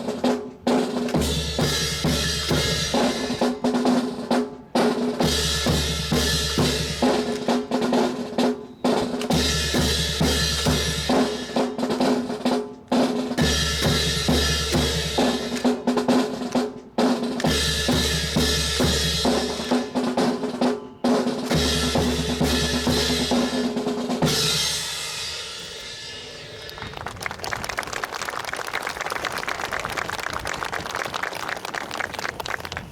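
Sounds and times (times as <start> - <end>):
marching drum corps playing: 0.0 - 25.1.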